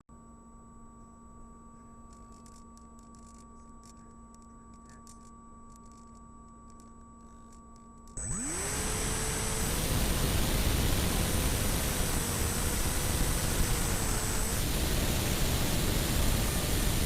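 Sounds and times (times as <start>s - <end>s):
faint electronic hum: 0.1s - 17.0s
low hiss: 8.2s - 17.0s.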